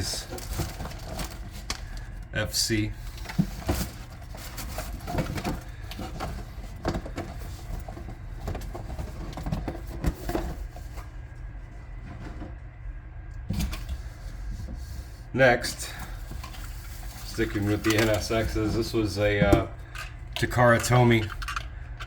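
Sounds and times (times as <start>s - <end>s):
packaging knocks and rustles: 0.0s - 2.0s, 3.0s - 11.0s, 16.2s - 21.7s.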